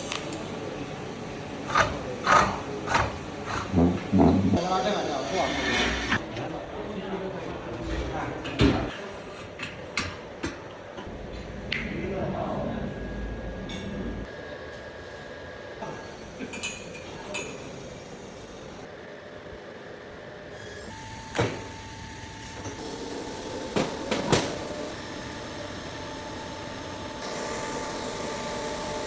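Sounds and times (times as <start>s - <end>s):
welding machine hum and hiss: 0.0s - 3.7s, 14.7s - 29.0s.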